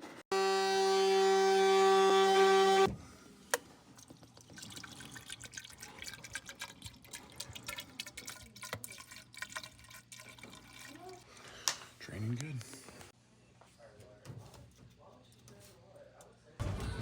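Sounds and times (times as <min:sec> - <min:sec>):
leaking water dripping: 0:03.9 - 0:11.8.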